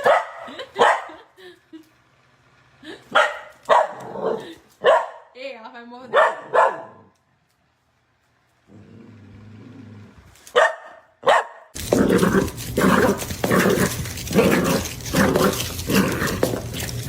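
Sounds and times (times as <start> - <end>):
dog barking: 0.0 - 1.2, 3.1 - 5.3, 6.1 - 7.1, 10.5 - 16.4
dog growling: 8.7 - 10.3, 11.8 - 17.0.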